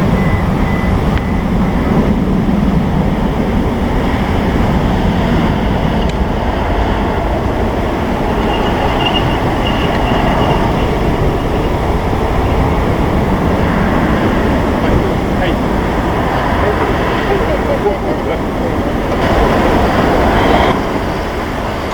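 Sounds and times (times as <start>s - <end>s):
faint high whine: 0.0s - 21.9s
jet engines rumbling: 0.0s - 21.9s
wind on microphone: 0.0s - 21.9s.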